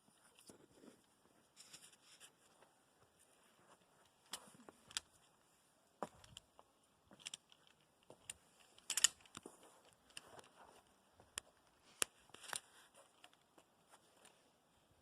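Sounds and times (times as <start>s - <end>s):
faint clicks and scuffs: 6.0s - 14.4s.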